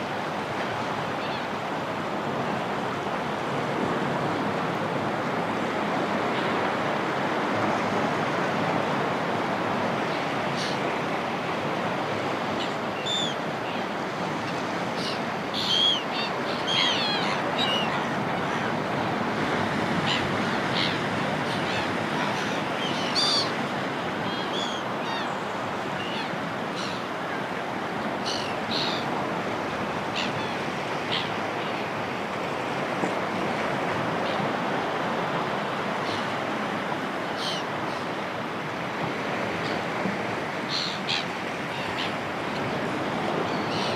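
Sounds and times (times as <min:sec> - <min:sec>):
sea waves washing on shore: 0:00.0 - 0:43.9
seagulls calling: 0:12.6 - 0:19.0, 0:19.9 - 0:27.5, 0:28.1 - 0:29.2, 0:37.2 - 0:38.1, 0:40.6 - 0:42.4, 0:43.1 - 0:43.9.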